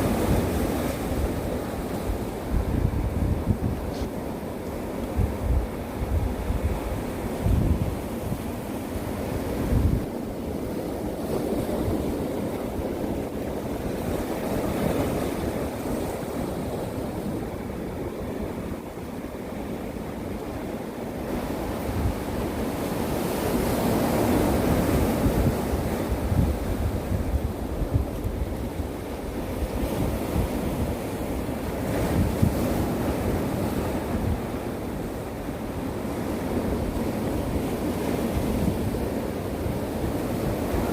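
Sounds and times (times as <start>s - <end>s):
wind buffeting microphone: 0.0s - 4.2s, 5.0s - 18.9s, 21.3s - 35.1s
waves breaking on rocky shore: 0.0s - 40.9s.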